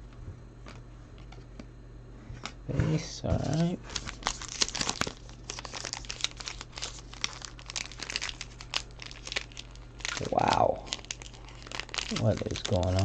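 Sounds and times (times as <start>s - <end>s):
wrapper crinkling and tearing: 3.5s - 13.0s.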